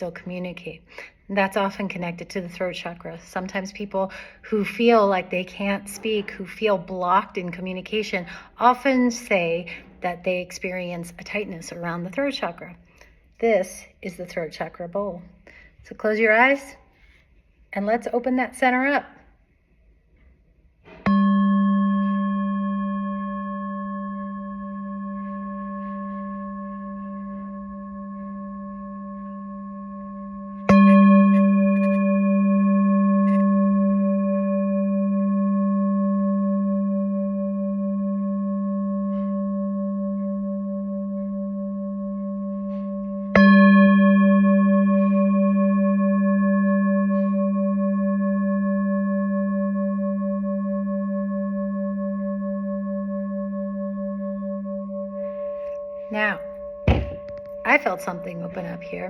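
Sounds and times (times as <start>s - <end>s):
singing bowl ringing: 21.0s - 59.0s.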